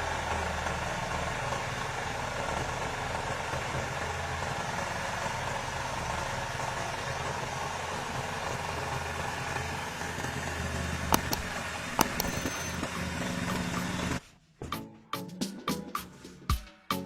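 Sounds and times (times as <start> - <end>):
sharp clicks: 11.1 - 12.8
small engine running: 11.1 - 12.8
music: 14.4 - 17.0.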